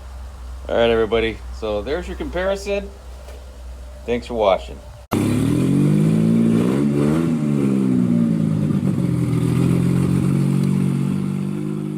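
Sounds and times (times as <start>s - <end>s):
car engine idling: 0.0s - 6.4s, 7.0s - 11.9s
engine revving: 5.1s - 11.9s.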